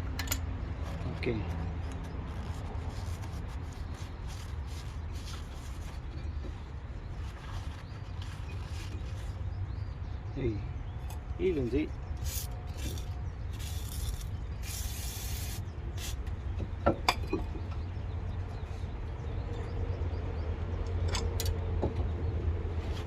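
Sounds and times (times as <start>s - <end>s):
aerosol spray hissing: 13.6s - 16.2s.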